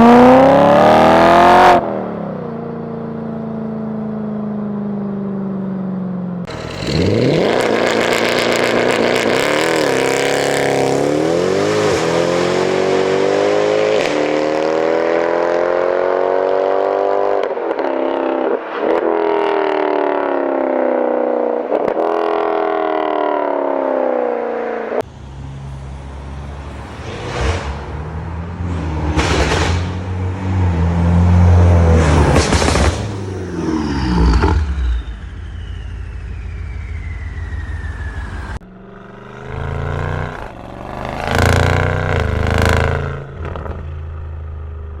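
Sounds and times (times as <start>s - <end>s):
car engine revving through gears: 0.0s - 1.9s, 6.5s - 17.8s, 38.9s - 43.9s.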